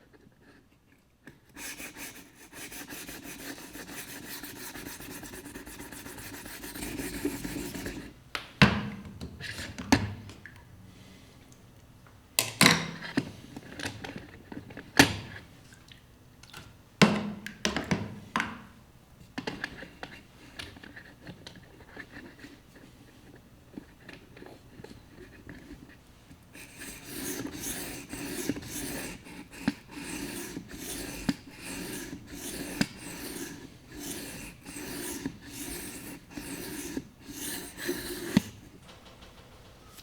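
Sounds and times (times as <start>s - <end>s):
whetstone rasping along knife edge: 26.6s - 38.6s.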